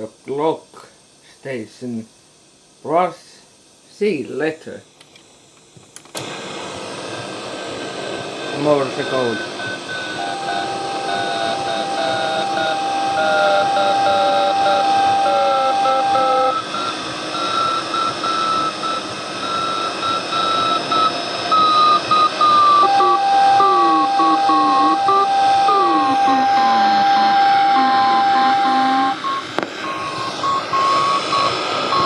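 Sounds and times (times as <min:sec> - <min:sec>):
radio static hiss: 0:00.0 - 0:32.0
steady whistle tone: 0:08.6 - 0:32.0
morse code beeping: 0:08.8 - 0:32.0.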